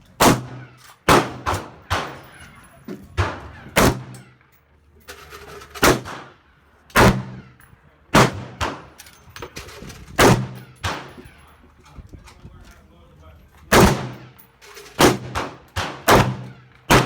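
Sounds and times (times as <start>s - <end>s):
gunshots with short echo: 8.2s - 9.0s, 13.7s - 14.2s, 15.0s - 17.0s.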